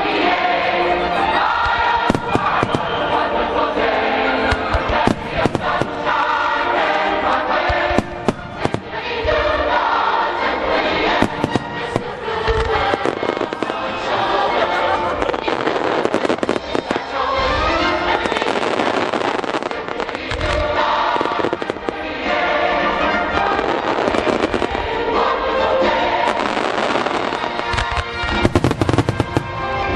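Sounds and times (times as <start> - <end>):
music with a choir: 0.0 - 29.9
fireworks bursting and crackling: 1.3 - 29.9
heavy low firework booms: 1.6 - 3.0, 4.7 - 6.1, 28.2 - 29.9.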